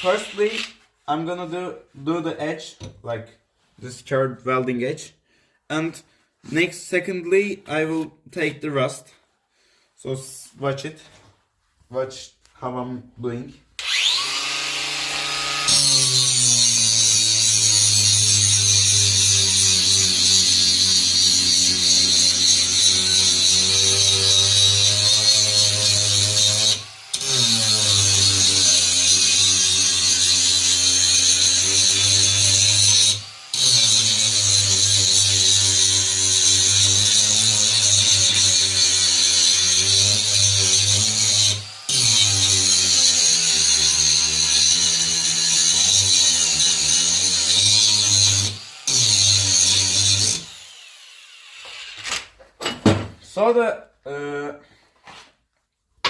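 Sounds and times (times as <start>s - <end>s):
angle grinder grinding metal: 0.0s - 0.8s, 13.8s - 52.3s.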